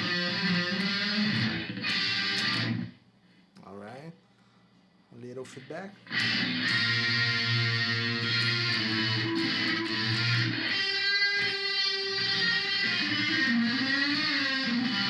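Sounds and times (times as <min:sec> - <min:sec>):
electric guitar with shimmering effect: 0:00.0 - 0:03.0, 0:06.0 - 0:15.0.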